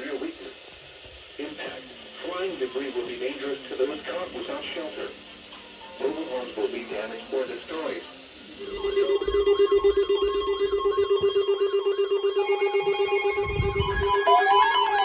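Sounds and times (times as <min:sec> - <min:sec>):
alarm beeps: 0:08.6 - 0:15.0
low warbling alarm tone: 0:08.6 - 0:15.0
repeating chirp: 0:11.0 - 0:15.0.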